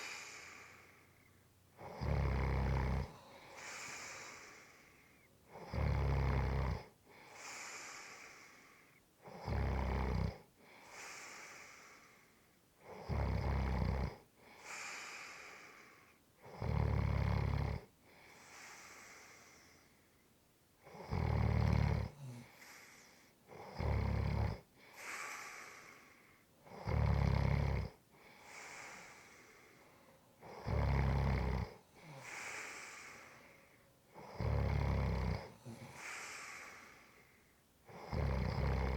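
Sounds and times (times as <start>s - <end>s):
airy out-breath: 0.0s - 1.3s, 3.0s - 5.3s, 22.2s - 23.3s, 24.8s - 26.5s, 28.2s - 30.2s, 32.0s - 33.9s, 35.4s - 37.5s
person snoring: 1.8s - 4.8s, 5.5s - 6.9s, 9.2s - 10.4s, 12.9s - 14.2s, 16.5s - 17.9s, 20.9s - 22.9s, 23.5s - 26.0s, 26.7s - 29.6s, 30.4s - 33.5s, 34.2s - 37.2s, 37.9s - 38.9s.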